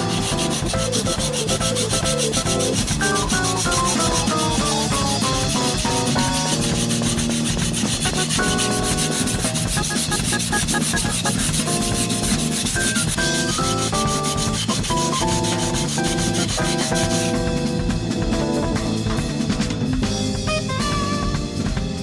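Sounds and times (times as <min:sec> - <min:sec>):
knife grinding on whetstone: 0:00.0 - 0:17.4
background music with fast beat: 0:00.0 - 0:22.0.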